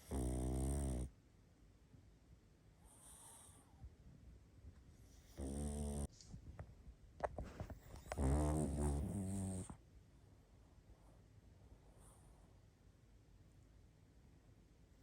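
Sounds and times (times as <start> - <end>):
dog snoring: 0.0 - 1.1, 2.9 - 3.7, 5.1 - 6.1, 7.8 - 9.8
small clicks and snuffles: 7.2 - 9.8.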